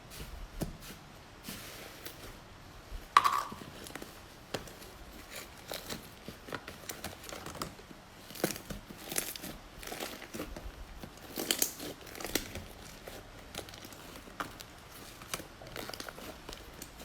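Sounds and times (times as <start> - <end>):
slime clicking and crackling: 5.6 - 17.0.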